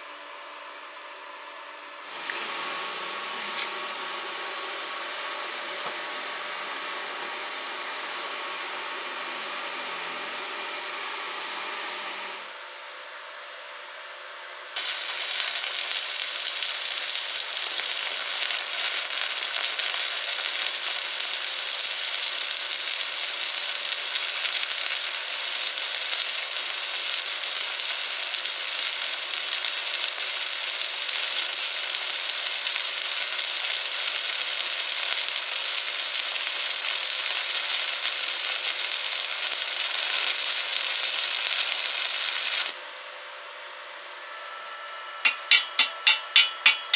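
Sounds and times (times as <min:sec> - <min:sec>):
welding arc crackling sizzle: 0:14.8 - 0:43.3, 0:45.3 - 0:46.9.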